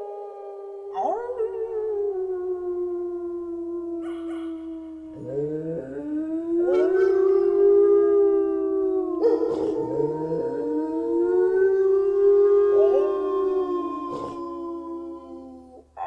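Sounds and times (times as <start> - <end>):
wolves howling: 0.0 - 16.0.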